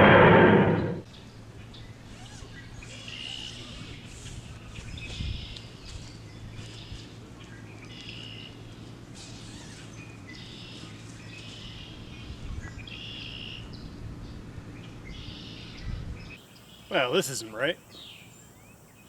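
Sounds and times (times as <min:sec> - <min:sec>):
low hum: 0:00.0 - 0:01.0.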